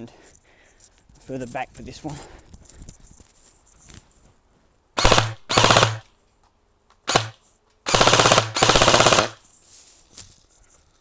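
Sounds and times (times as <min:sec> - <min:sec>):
automatic gunfire bursts: 0:05.0 - 0:06.1, 0:07.1 - 0:09.4.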